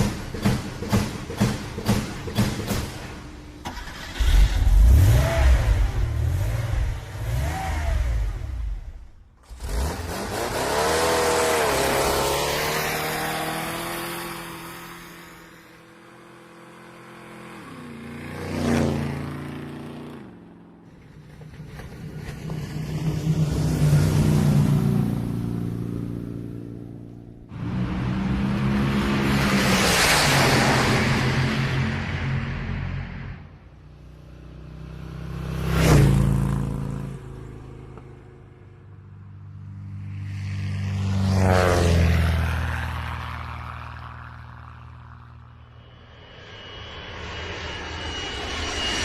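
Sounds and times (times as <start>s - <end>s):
vehicle engine revving: 3.6s - 15.6s.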